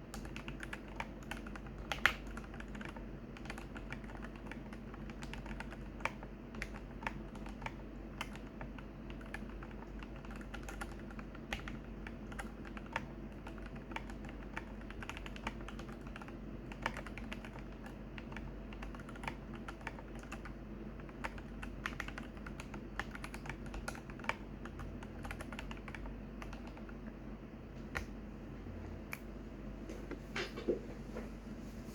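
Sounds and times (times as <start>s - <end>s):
steady low hum: 0.0s - 31.9s.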